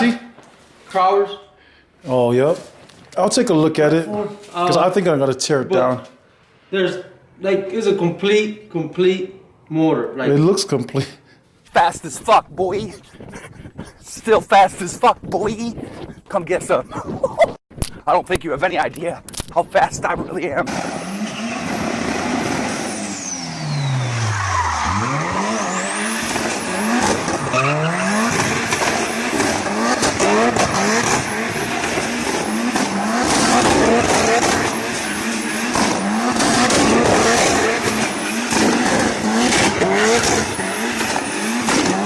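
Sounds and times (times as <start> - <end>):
racing car engine revving: 20.7 - 42.0
tyres squealing and skidding: 20.7 - 42.0.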